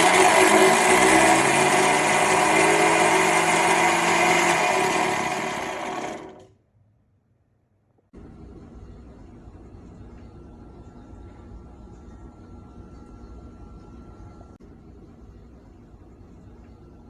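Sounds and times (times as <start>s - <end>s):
blender motor whining: 0.0s - 6.5s.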